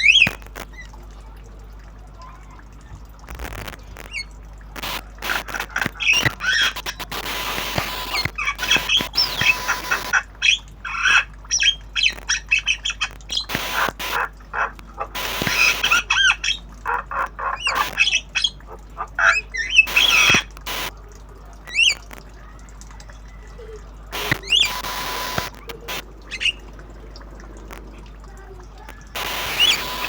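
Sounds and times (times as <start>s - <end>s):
bird chattering and whistling: 19.2s - 20.6s, 24.2s - 26.7s, 29.4s - 30.0s.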